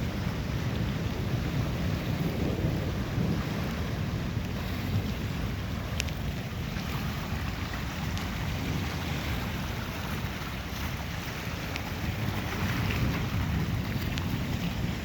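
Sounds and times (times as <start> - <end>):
wind buffeting microphone: 0.0 - 15.0
faint ticks: 5.9 - 6.2, 11.7 - 11.9.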